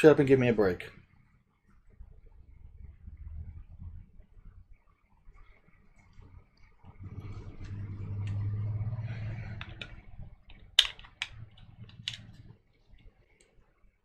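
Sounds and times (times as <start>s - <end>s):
low hum: 0.8s - 14.0s
gun parts clicking: 9.6s - 13.1s.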